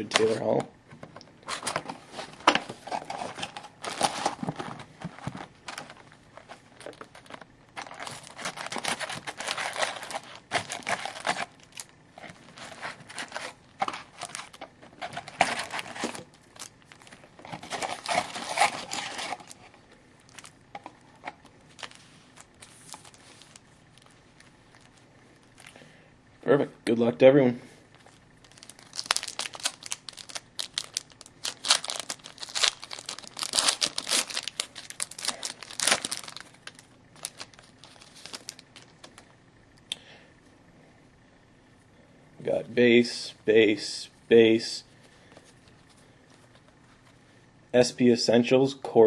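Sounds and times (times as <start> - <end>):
plastic wrapping crinkling and tearing: 2.8 - 20.6, 21.4 - 25.7, 28.1 - 39.2.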